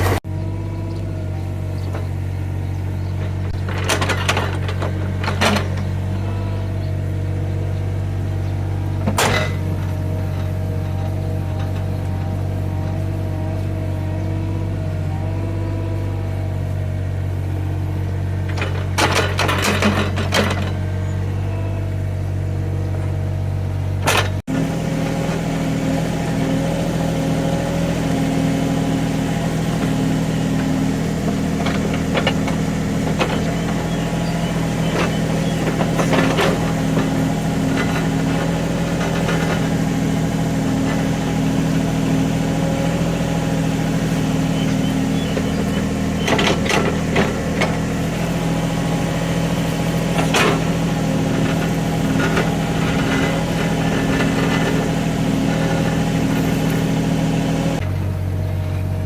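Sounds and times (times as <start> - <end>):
excavator diesel engine running: 0.0 - 59.0
machine clanks: 18.4 - 20.9, 27.8 - 56.9.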